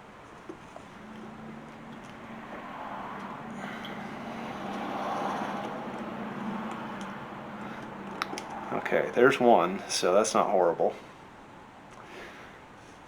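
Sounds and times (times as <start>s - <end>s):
motor vehicle passing: 0.5s - 10.6s.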